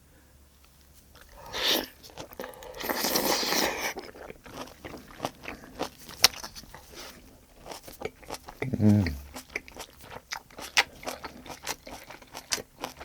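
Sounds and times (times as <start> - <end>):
noisy chewing: 1.1 - 13.0
loud bite: 8.6 - 9.4.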